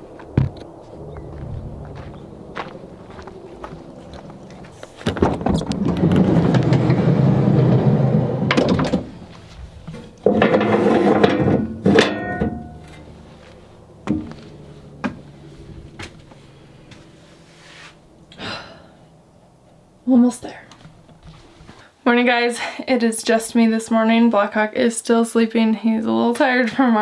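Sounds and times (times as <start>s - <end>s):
door scraping and rumbling: 0.0s - 18.3s.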